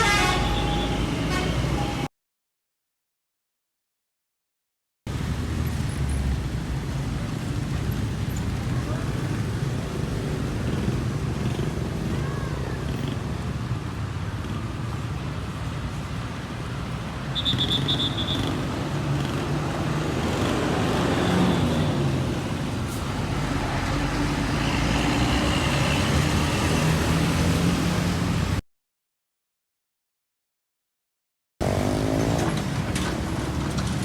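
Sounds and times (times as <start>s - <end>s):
passing vehicles: 5.1s - 28.6s, 31.6s - 34.0s.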